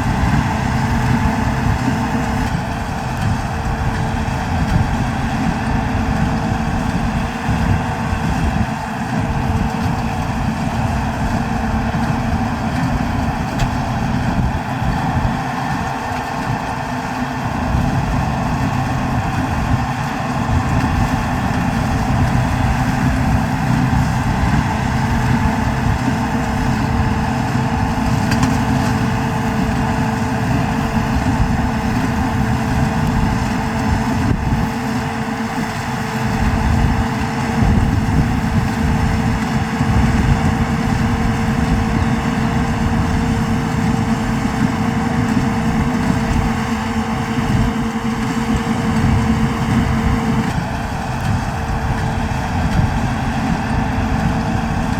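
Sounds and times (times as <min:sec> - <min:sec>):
tractor diesel engine running: 0:00.0 - 0:54.9.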